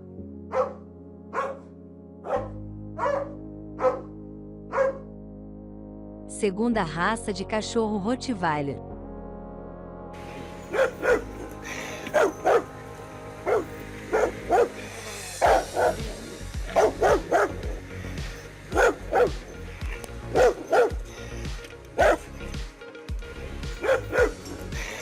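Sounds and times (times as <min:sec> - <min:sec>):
background music: 0:00.0 - 0:25.0
dog barking deeply: 0:00.5 - 0:05.1, 0:10.6 - 0:12.7, 0:13.4 - 0:17.8, 0:18.7 - 0:19.6, 0:20.3 - 0:21.0, 0:22.0 - 0:22.3, 0:23.8 - 0:24.6.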